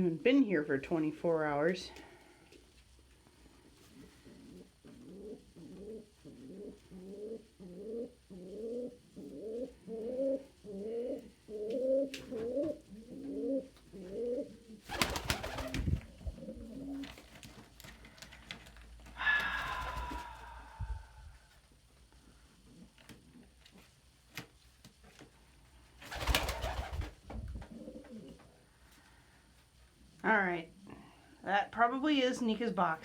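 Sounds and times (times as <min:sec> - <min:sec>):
pigeon cooing: 0:03.9 - 0:17.1, 0:27.7 - 0:28.4.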